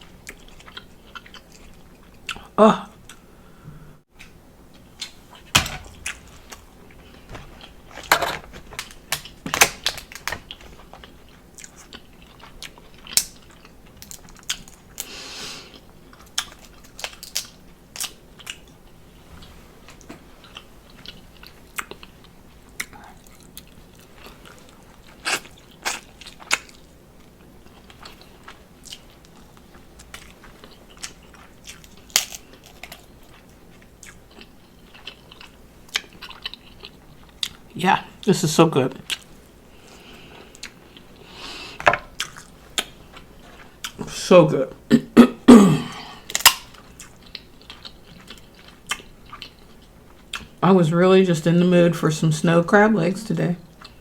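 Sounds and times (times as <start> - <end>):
person chewing and biting: 15.7 - 18.8, 20.0 - 37.7, 45.9 - 50.6.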